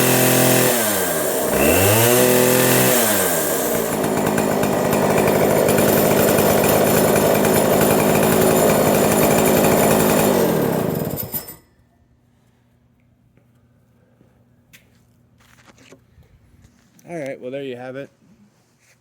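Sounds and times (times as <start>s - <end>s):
chainsaw running: 0.0s - 11.6s.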